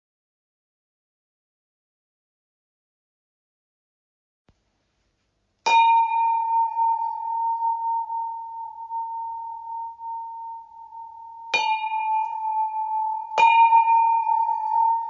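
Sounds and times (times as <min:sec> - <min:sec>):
bell ringing: 0:05.7 - 0:15.0.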